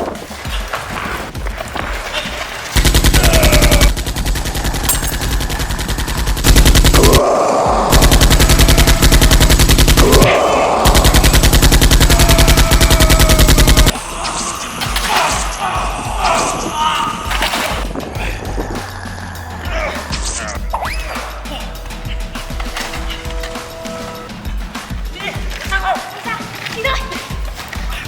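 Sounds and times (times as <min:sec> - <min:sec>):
rapid automatic gunfire: 0:02.8 - 0:07.2, 0:07.9 - 0:13.9.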